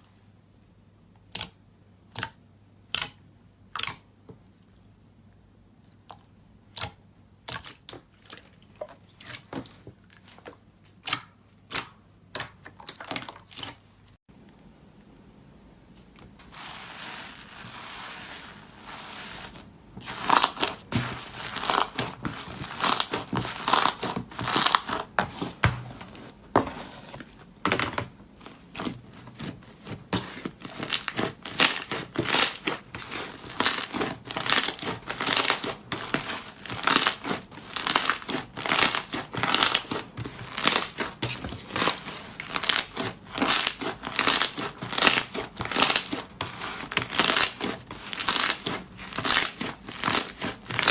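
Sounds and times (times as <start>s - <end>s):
slime rustling: 16.0s - 50.9s.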